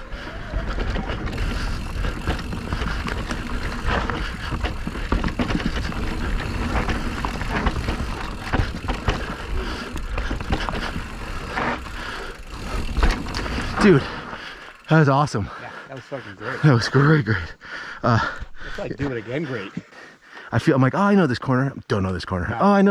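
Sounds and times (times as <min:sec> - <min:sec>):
tyres rolling over dirt and rocks: 0:00.0 - 0:15.4
bike clicks and rattles: 0:00.0 - 0:16.2.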